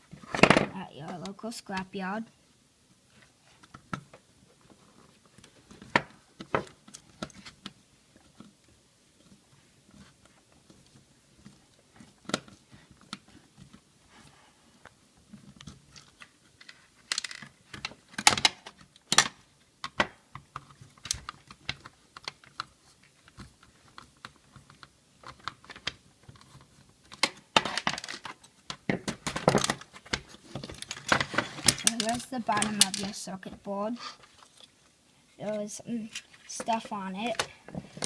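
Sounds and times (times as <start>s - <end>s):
radio parts clattering: 27.1s - 34.8s.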